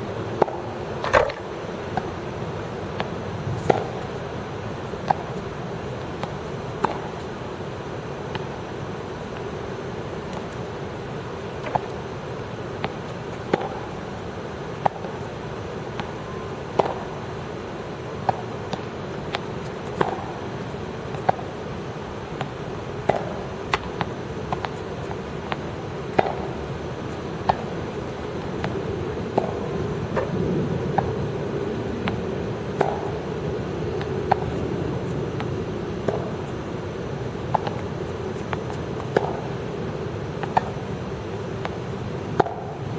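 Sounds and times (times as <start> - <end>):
steady background hum: 0.0 - 42.9
tennis balls hit with rackets: 0.4 - 2.1, 3.7 - 4.0, 6.2 - 7.1, 12.8 - 13.9, 14.8 - 15.2, 16.7 - 17.2, 18.2 - 20.3, 22.4 - 26.6, 27.4 - 29.6, 32.0 - 33.2, 34.0 - 34.6, 35.4 - 36.4, 37.5 - 39.5, 40.4 - 40.8, 41.6 - 42.8.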